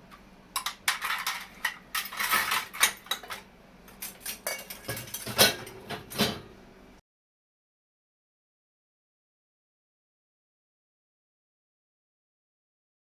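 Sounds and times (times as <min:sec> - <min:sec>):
dishes clinking and clattering: 0:00.6 - 0:06.5.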